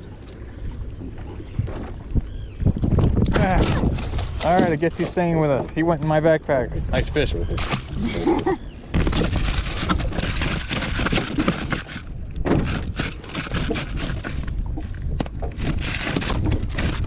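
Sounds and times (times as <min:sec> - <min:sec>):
wind rumbling on microphone: 0:00.0 - 0:17.0
knocks and scrapes of gear: 0:09.0 - 0:17.0.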